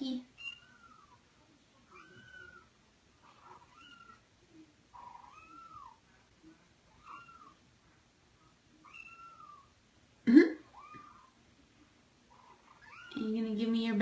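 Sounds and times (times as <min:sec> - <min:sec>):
kittens meowing: 0:00.4 - 0:01.2, 0:01.9 - 0:04.2, 0:05.0 - 0:06.0, 0:06.9 - 0:07.6, 0:08.8 - 0:09.8, 0:10.6 - 0:11.4, 0:12.3 - 0:13.3.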